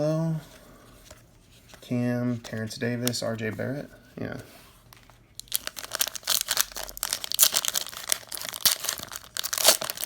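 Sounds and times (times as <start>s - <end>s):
plastic wrapper tearing and crinkling: 5.3s - 10.0s.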